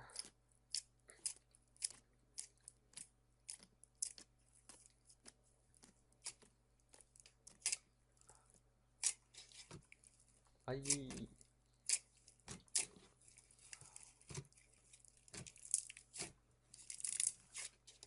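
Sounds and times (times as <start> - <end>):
slime crackling and popping: 6.2 - 7.9, 9.0 - 10.2, 10.8 - 18.0.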